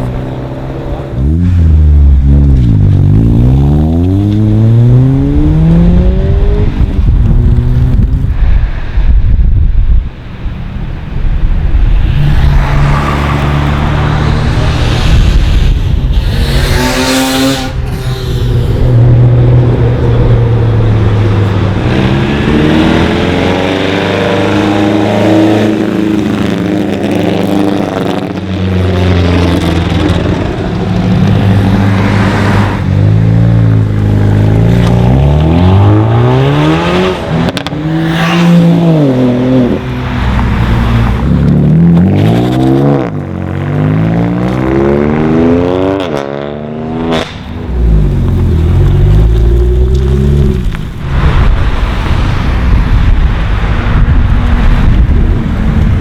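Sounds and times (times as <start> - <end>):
cars revving past at speed: 11.8 - 56.0.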